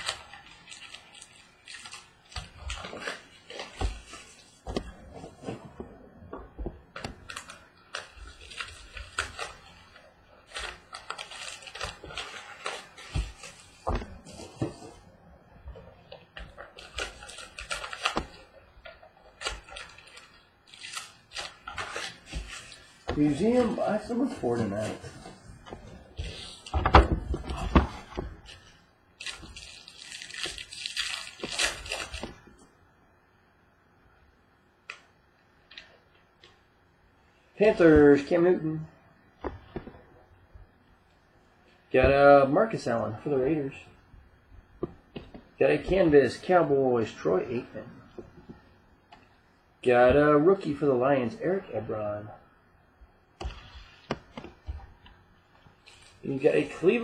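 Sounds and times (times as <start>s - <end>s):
wrapper crinkling: 0.0s - 4.7s, 7.2s - 15.1s, 16.4s - 26.9s, 27.5s - 32.6s, 55.6s - 57.0s
card box packaging rustling: 0.0s - 5.9s, 6.8s - 15.1s, 16.2s - 18.5s, 19.2s - 32.4s
dull thumps: 13.0s - 15.0s.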